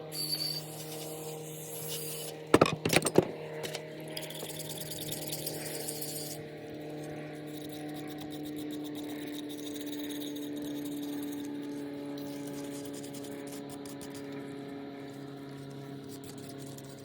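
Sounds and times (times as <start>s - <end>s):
tools clicking and knocking: 2.5s - 4.5s.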